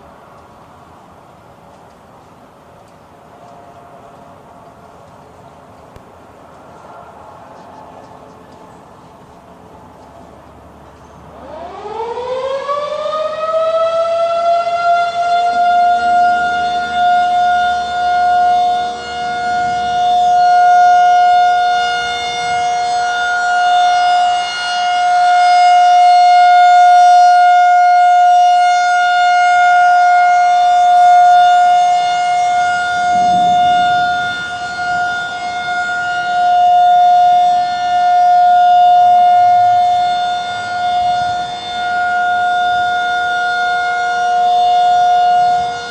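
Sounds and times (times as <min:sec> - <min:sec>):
warning siren winding up: 0:11.3 - 0:45.9.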